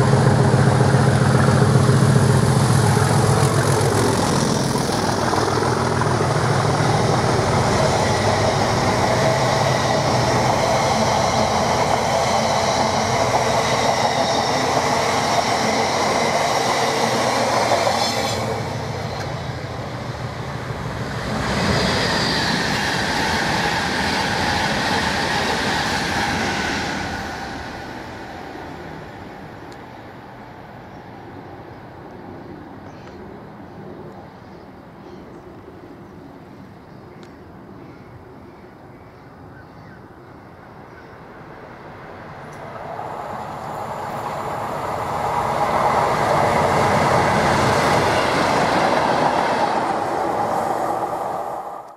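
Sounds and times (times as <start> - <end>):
train wheels rolling on rails: 0.0 - 30.7, 41.8 - 51.9.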